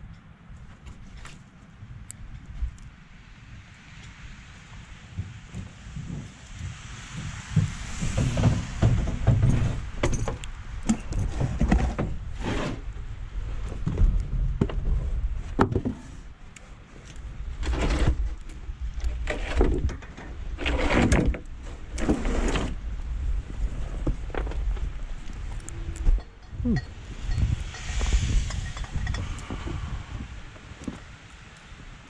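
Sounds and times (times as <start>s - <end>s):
wind on microphone: 0.0s - 32.0s
metal clanks and thunks: 7.6s - 12.2s.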